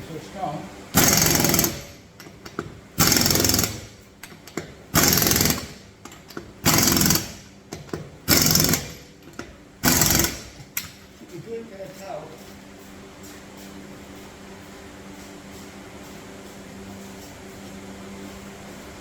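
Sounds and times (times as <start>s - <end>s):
impact wrench rattling bursts: 0.9s - 11.2s.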